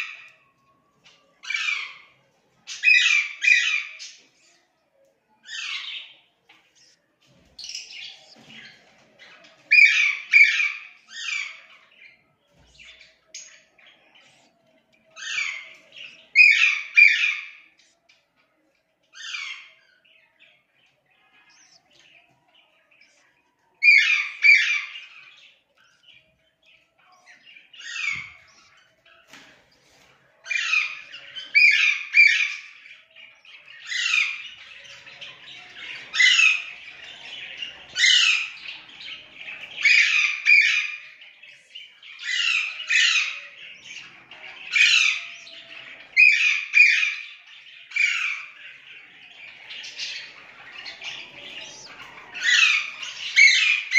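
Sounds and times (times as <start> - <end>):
soft bird chatter: 0.0 - 53.9
budgerigars calling: 49.7 - 53.9.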